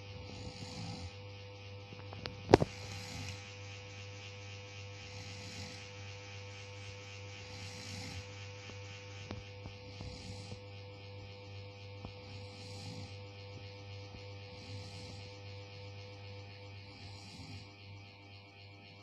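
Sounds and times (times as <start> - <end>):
person snoring: 0.0 - 1.3, 2.5 - 3.6, 4.9 - 8.6, 9.2 - 10.8, 12.1 - 13.4, 14.4 - 15.5, 16.4 - 17.8
steady electrical hum: 0.0 - 19.0.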